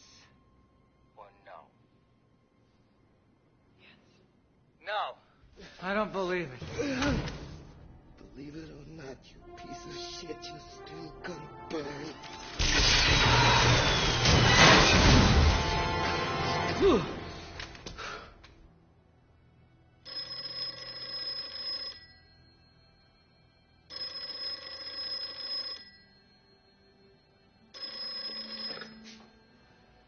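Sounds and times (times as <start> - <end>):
loud sound: 12.4 - 17.4
telephone ringing: 20.0 - 23.0, 23.8 - 27.0, 27.6 - 30.0.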